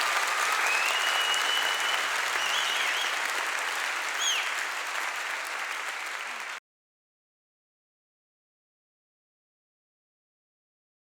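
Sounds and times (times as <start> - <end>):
audience applause: 0.0 - 6.6.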